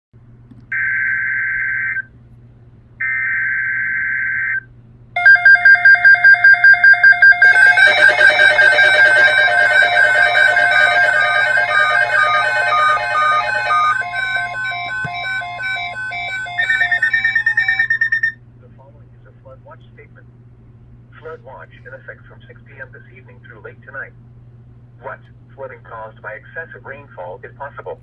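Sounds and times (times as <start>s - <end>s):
pulsing electronic alert tone: 5.2s - 18.4s
buzzy data bursts: 7.4s - 18.3s.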